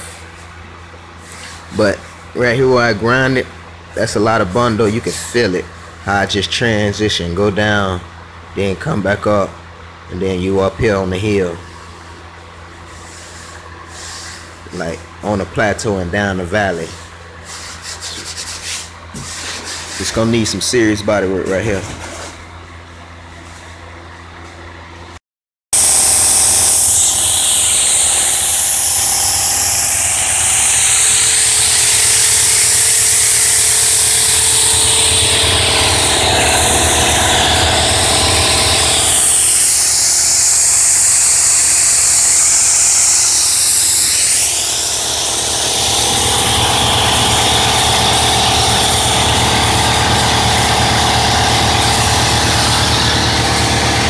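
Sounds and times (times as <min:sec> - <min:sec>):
low hum: 0:25.8 - 0:54.0
power sander grinding metal: 0:25.8 - 0:54.0.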